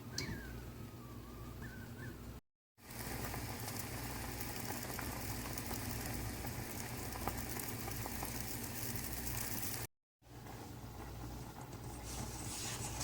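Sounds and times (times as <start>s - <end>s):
pot of water boiling: 2.8s - 13.0s.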